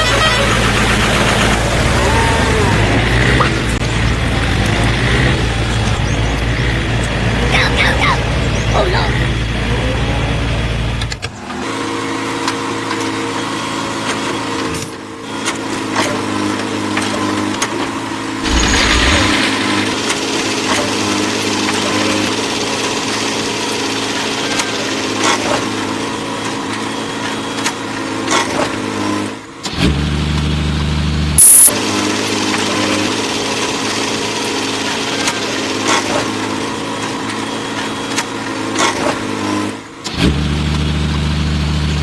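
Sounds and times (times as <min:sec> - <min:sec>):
small motor running: 0:18.4 - 0:25.0.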